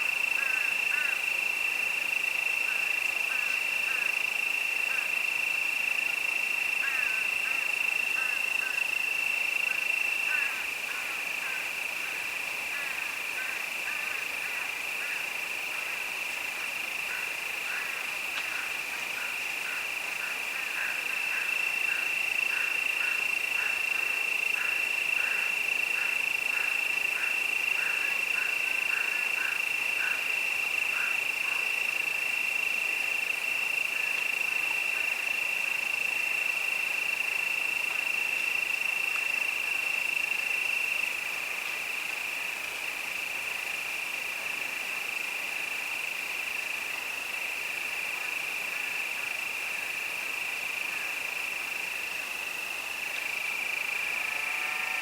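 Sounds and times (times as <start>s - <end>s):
crickets chirring: 0.0s - 55.0s.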